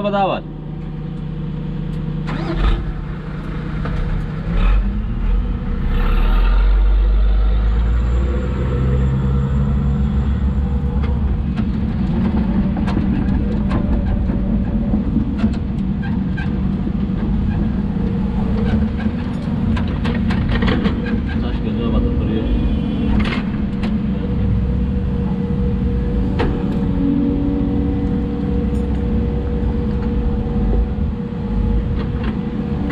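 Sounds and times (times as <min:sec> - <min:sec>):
excavator diesel engine revving: 0:00.0 - 0:32.9
knocks and clanks: 0:10.9 - 0:22.2, 0:23.0 - 0:24.2.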